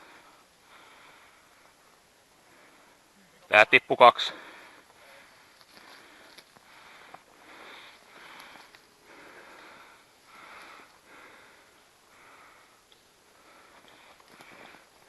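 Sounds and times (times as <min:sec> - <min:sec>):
soft breathing: 0:00.0 - 0:03.4, 0:04.3 - 0:15.0
faint clicks: 0:08.2 - 0:08.9, 0:12.8 - 0:13.1, 0:13.7 - 0:14.8.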